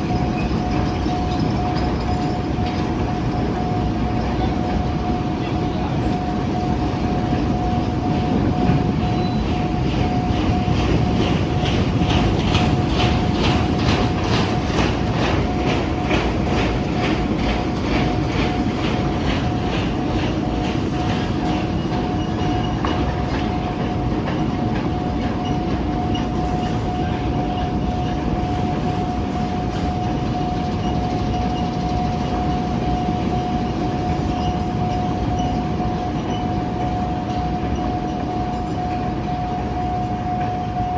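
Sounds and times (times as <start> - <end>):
wheels clattering over rail joints: 0.0 - 5.2, 7.5 - 39.0
steady single-pitched warning tone: 0.0 - 40.9
train rumbling past: 0.0 - 40.9.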